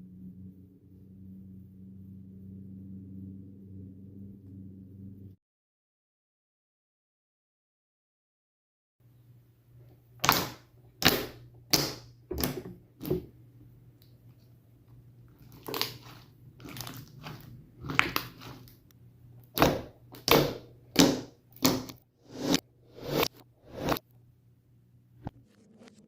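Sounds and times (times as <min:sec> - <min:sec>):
faint low hum: 0:00.0 - 0:05.4
sticky slime squelches: 0:10.2 - 0:13.4, 0:15.3 - 0:24.0.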